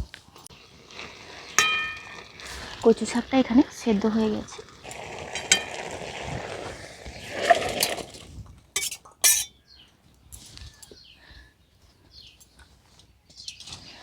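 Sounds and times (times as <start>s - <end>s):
metal utensils scraping a pot: 1.5s - 3.1s, 5.4s - 5.9s, 8.8s - 9.5s.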